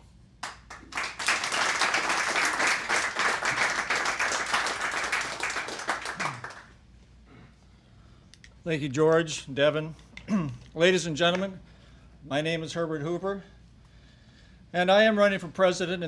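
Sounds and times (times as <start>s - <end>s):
room of people applauding: 0.0s - 6.8s.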